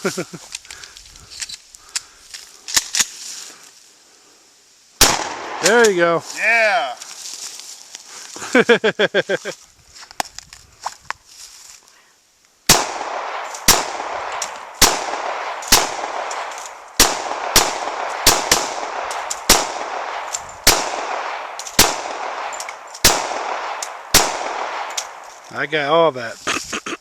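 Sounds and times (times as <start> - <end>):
gunshots with echo: 5.0 - 6.0, 12.7 - 25.2.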